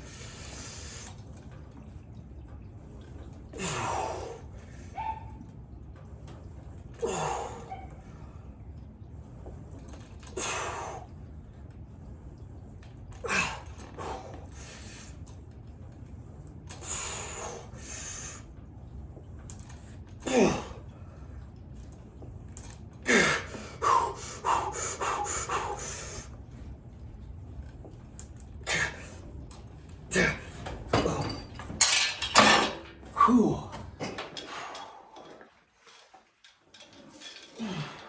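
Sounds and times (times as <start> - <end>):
man breathing hard and gasping: 23.0 - 26.3.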